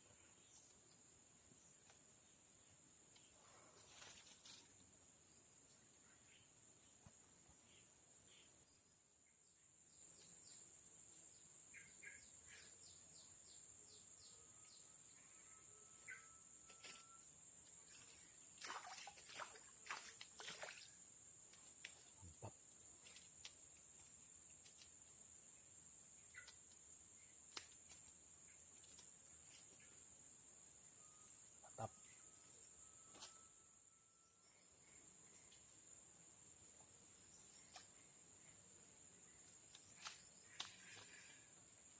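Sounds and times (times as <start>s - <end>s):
faint whistle: 15.4s - 17.2s
high-pitched insect drone: 30.6s - 35.5s.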